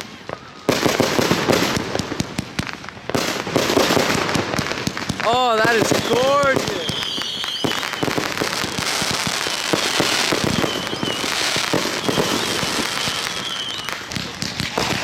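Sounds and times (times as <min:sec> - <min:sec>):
fireworks popping and crackling: 0:00.0 - 0:15.0
faint high whistles: 0:06.0 - 0:09.0, 0:10.3 - 0:14.1.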